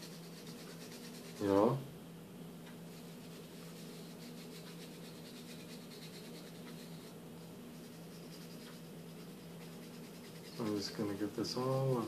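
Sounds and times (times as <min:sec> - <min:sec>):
small brush scrubbing circuit board: 0:00.0 - 0:01.8, 0:02.9 - 0:12.0.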